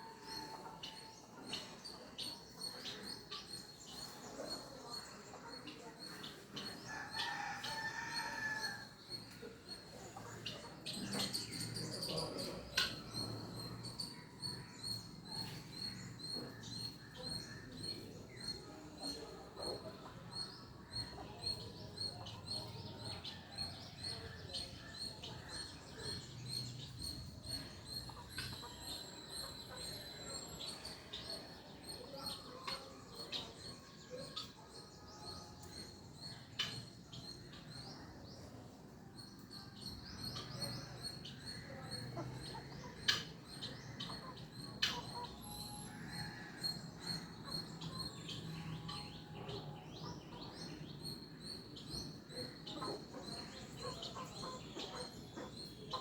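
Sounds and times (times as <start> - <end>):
guinea fowl soft chirps: 40.3 - 50.6.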